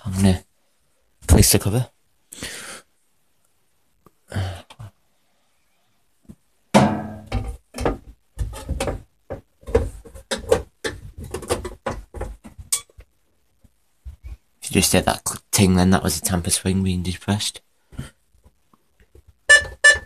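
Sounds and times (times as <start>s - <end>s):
plastic cover knocking: 6.8s - 12.7s.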